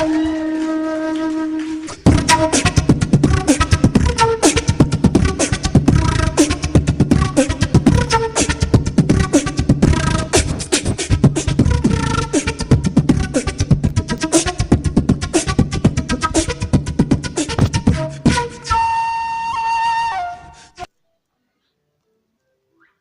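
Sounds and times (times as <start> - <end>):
dance-pop music: 7.3 - 16.5.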